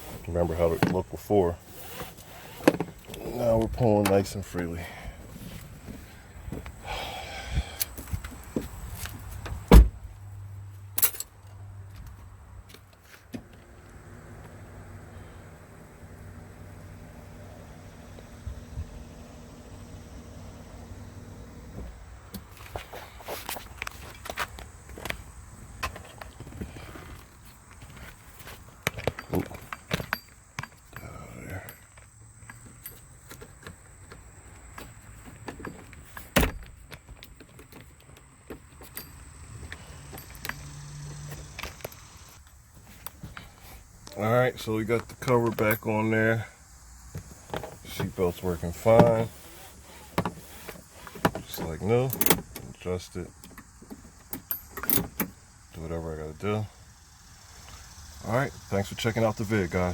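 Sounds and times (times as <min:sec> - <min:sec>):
seatbelt webbing whirring: 0:01.6 - 0:04.3, 0:16.7 - 0:28.6, 0:35.6 - 0:46.4, 0:47.2 - 0:55.4
loud thump: 0:09.7 - 0:10.0.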